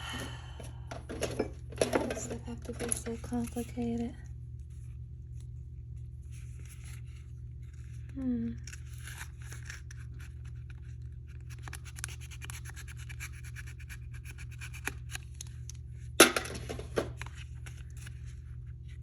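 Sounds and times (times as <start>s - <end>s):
steady low hum: 0.0s - 19.0s
packaging scratching and clicking: 6.4s - 15.8s.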